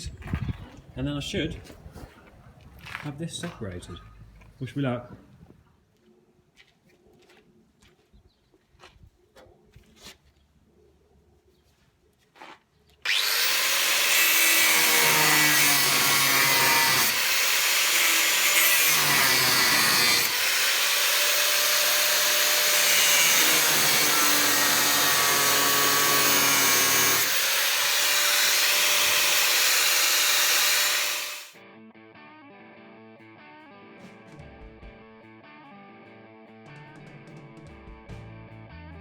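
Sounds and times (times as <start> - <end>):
angle grinder cutting steel: 13.0 - 31.6.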